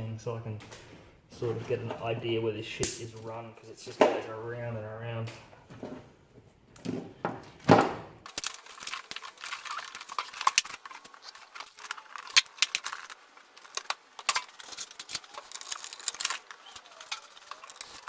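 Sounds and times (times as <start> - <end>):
small clicks snips and crackles: 8.3 - 18.0.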